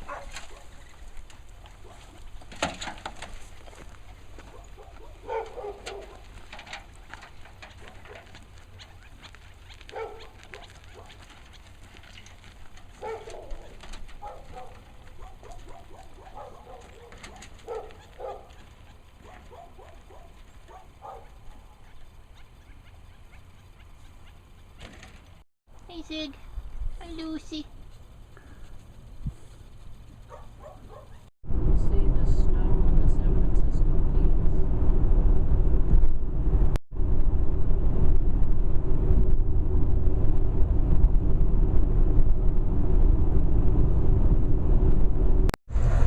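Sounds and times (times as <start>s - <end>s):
low cooing calls: 13.0s - 24.8s.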